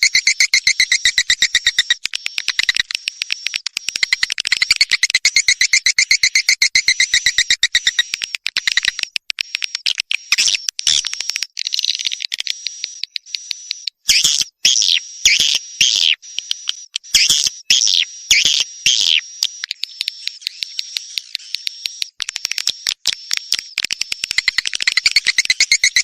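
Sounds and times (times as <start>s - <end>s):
swiftlet calls: 0.0s - 8.9s, 24.3s - 26.0s.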